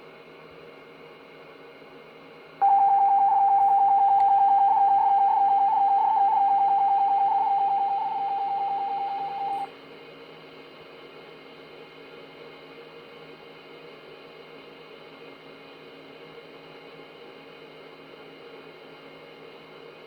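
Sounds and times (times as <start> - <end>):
rapidly pulsing radio tone: 2.6 - 9.7.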